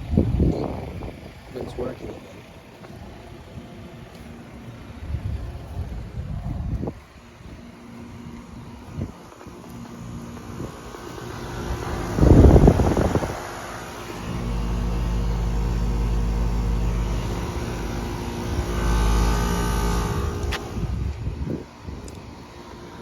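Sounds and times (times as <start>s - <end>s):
air conditioner compressor hum: 0.0s - 23.0s
loud rush of noise: 10.0s - 23.0s.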